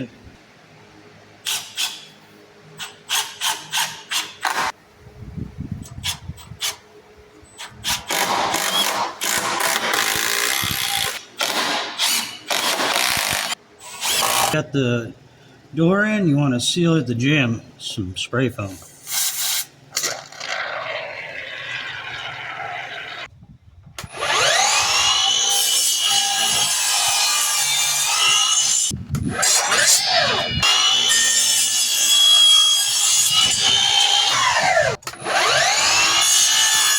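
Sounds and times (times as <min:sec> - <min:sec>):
power drill driving screws: 0:07.6 - 0:14.5, 0:24.0 - 0:36.9.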